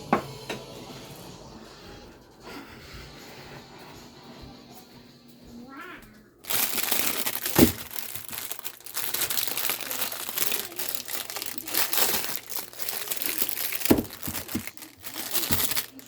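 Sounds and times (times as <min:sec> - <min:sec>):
food packaging crinkling: 0:06.4 - 0:16.0.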